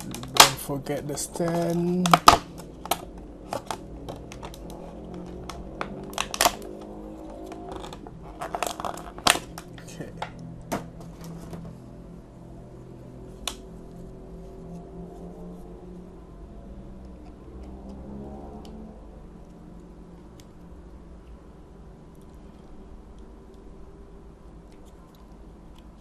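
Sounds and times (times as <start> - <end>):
plastic packaging crackling and snapping: 0.0 - 11.6
quiet background music: 0.0 - 26.0.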